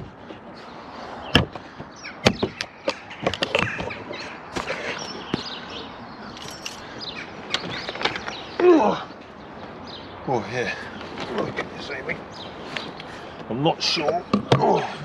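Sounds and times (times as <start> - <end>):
birds chirping: 0.0 - 15.0
knocks of climbing into tractor cab: 1.3 - 5.6.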